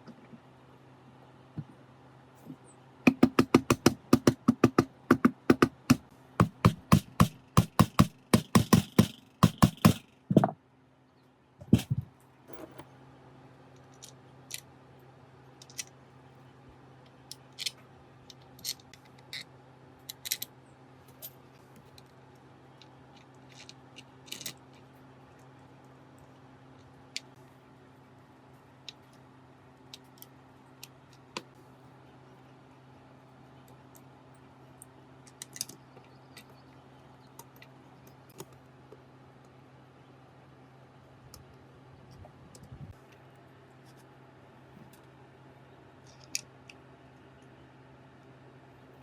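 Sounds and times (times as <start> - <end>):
steady low hum: 0.0 - 49.0
fast sharp knocks: 3.1 - 10.6.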